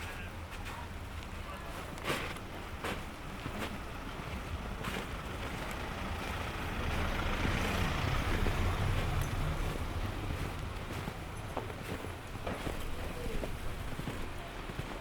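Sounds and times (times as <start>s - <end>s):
vehicle passing: 3.3s - 14.7s.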